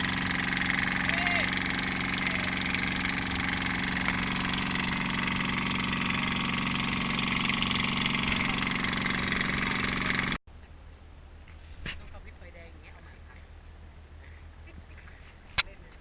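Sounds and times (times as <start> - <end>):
boat engine running: 0.0 - 10.4.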